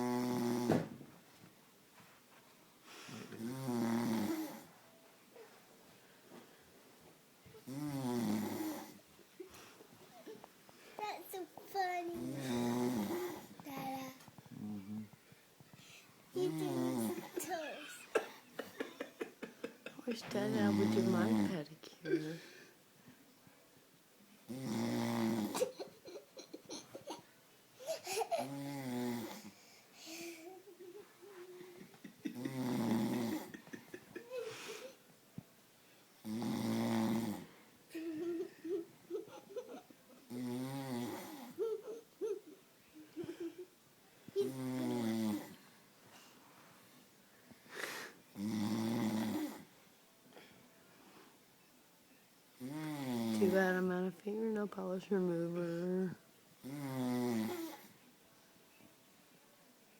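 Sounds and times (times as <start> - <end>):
man snoring: 0.0 - 0.8, 3.4 - 4.7, 7.6 - 9.0, 12.2 - 13.5, 16.5 - 17.4, 20.5 - 21.6, 24.5 - 25.7, 28.4 - 29.5, 32.2 - 34.0, 36.2 - 37.5, 40.3 - 41.6, 44.5 - 45.6, 48.4 - 49.7, 52.6 - 53.6, 56.6 - 57.9
breathing: 2.8 - 3.4, 15.2 - 16.2, 22.4 - 22.8, 29.4 - 30.6, 34.4 - 35.0, 46.1 - 46.8, 47.4 - 48.2.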